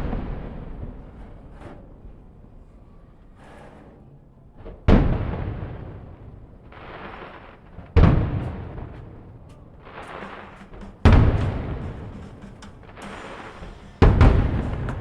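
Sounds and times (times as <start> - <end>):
firework shells booming: 0.0 - 2.2, 4.6 - 15.0
rumbling echo: 4.8 - 15.0
hissing burst: 6.7 - 15.0.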